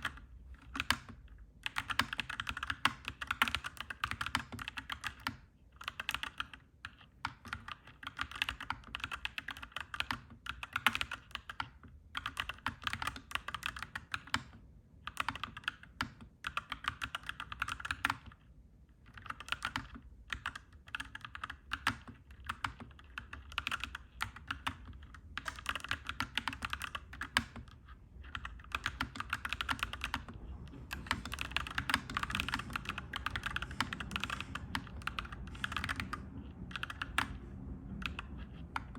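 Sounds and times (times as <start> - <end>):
mechanical keyboard typing: 0.0 - 18.4, 19.0 - 38.9
low steady rumble: 23.0 - 38.9.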